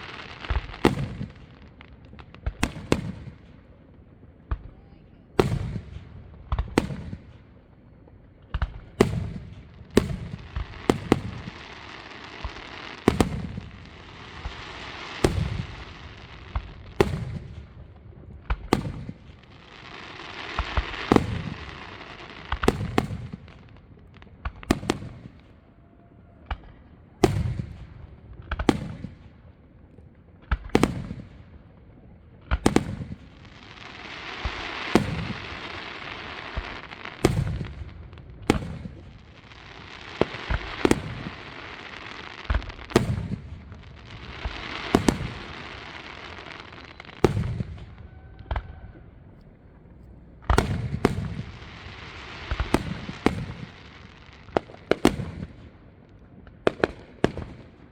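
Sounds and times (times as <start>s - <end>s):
firework crackling: 0.0s - 3.6s, 8.6s - 25.4s, 32.5s - 55.8s.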